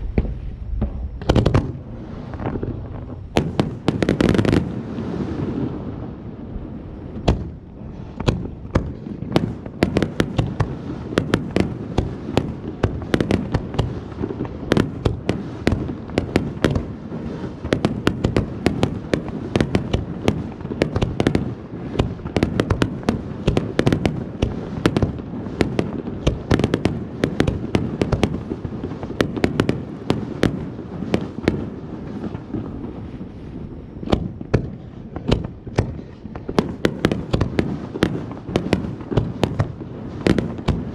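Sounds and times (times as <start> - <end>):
low rumble: 0.0 - 3.4
fireworks crackling: 0.0 - 40.9.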